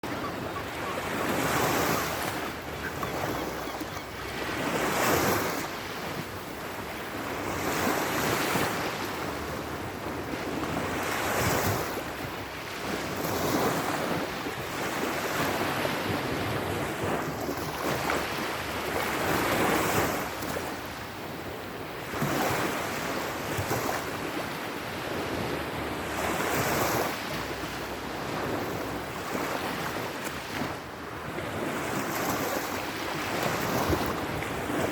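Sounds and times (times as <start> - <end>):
waves washing in and drawing back: 0.0 - 34.9.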